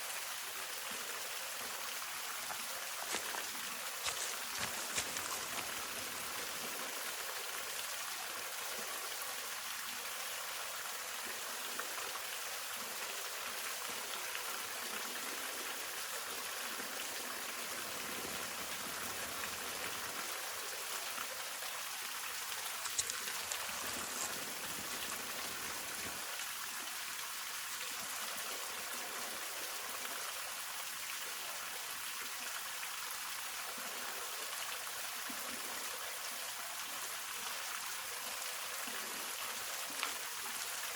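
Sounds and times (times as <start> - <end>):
waterfall splashing: 2.4 - 6.7.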